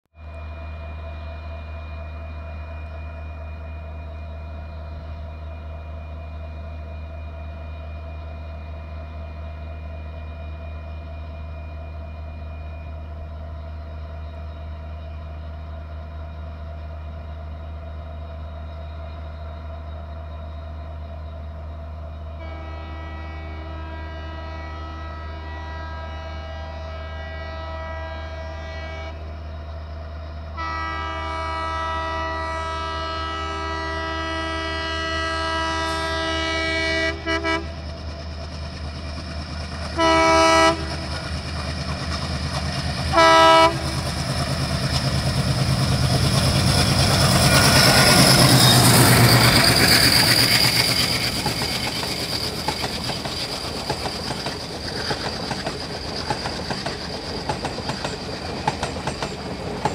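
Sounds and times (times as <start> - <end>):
diesel locomotive horn: 22.4 - 29.4, 30.6 - 37.8, 39.9 - 41.2, 43.0 - 44.1
train wheels clattering over rail joints: 37.8 - 59.9.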